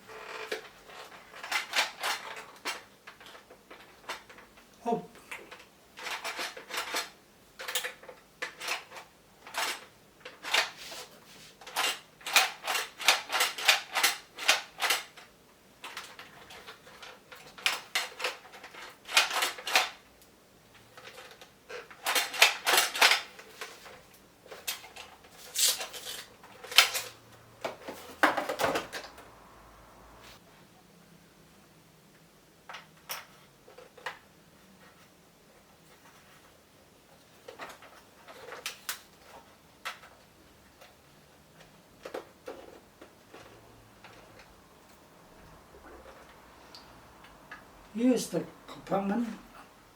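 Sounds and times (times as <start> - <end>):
plastic toy gun clicks and rattles: 0.1 - 4.5, 5.5 - 10.8, 11.6 - 20.0, 20.8 - 29.2.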